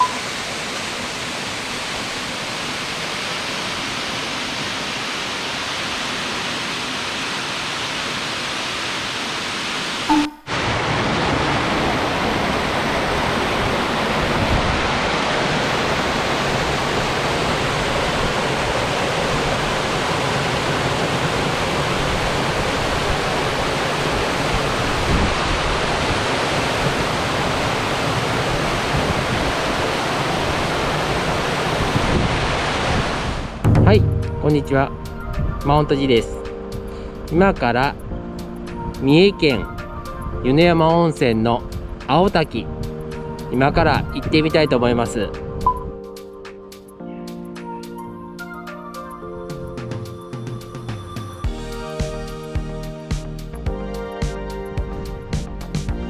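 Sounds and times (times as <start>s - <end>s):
waterfall rushing: 0.0s - 35.9s.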